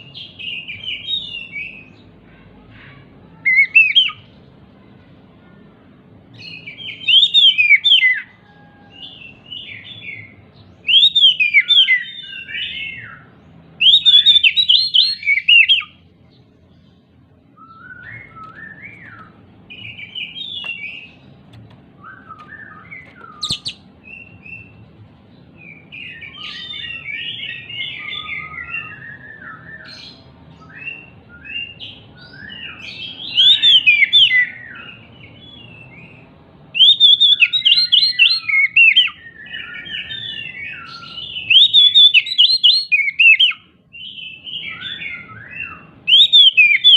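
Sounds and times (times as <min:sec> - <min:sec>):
bird singing whistled phrases: 0:03.4 - 0:04.2, 0:06.4 - 0:08.3, 0:09.0 - 0:16.0, 0:17.6 - 0:21.2, 0:22.0 - 0:24.7, 0:25.7 - 0:36.1, 0:36.8 - 0:46.9
bird twittering: 0:13.8 - 0:16.0, 0:17.6 - 0:24.7, 0:36.8 - 0:46.9.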